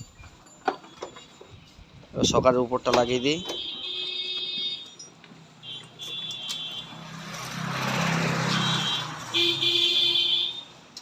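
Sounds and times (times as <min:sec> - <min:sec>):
motor vehicle passing by: 0:06.8 - 0:09.6.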